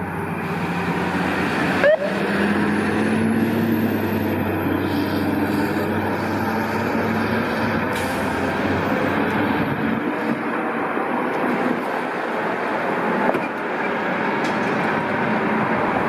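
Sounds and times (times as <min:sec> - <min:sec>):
diesel engine humming: 0:00.0 - 0:16.0
road traffic noise: 0:00.0 - 0:16.0.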